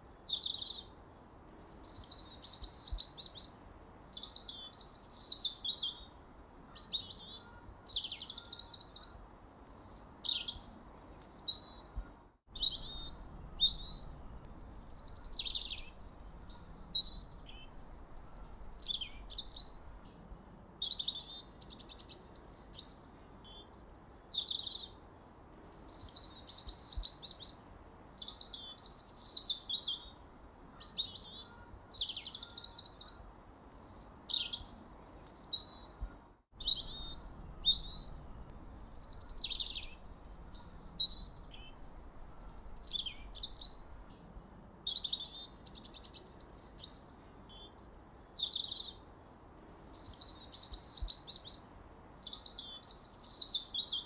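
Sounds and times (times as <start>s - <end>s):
bird chirping and trilling: 12.6s - 19.9s, 36.6s - 44.0s.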